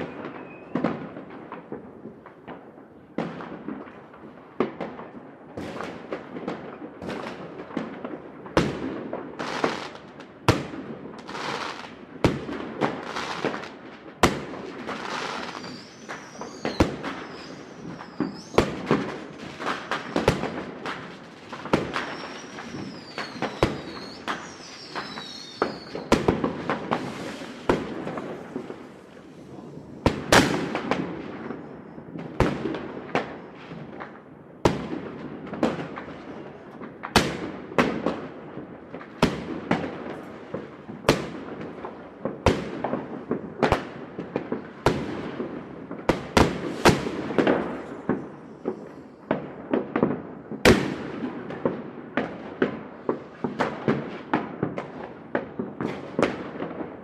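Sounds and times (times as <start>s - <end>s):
rocket whistles: 0.0s - 0.8s, 15.2s - 18.8s, 21.8s - 29.0s
fireworks bangs and crackling: 0.0s - 57.0s.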